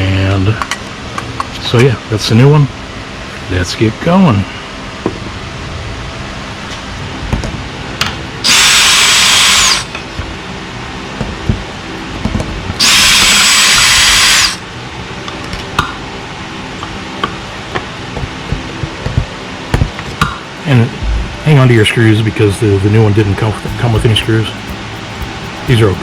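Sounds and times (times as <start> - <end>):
power drill removing screws: 8.5 - 9.8, 12.8 - 14.6.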